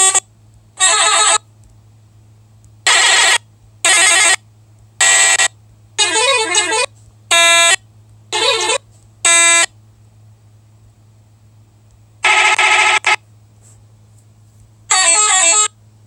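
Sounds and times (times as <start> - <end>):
steady low hum: 0.0 - 14.9, 15.7 - 16.0
multi-tone bus horn blasts: 12.2 - 13.1.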